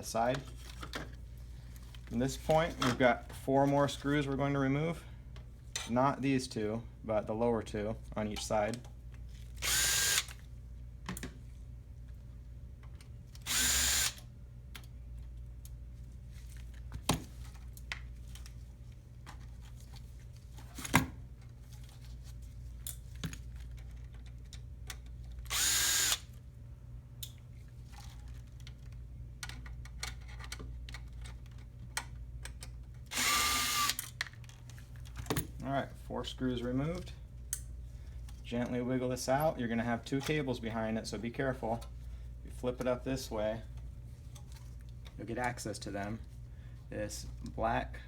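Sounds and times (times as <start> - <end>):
cordless power screwdriver whirring: 9.6 - 10.4, 13.4 - 14.2, 25.5 - 26.3, 33.1 - 34.1.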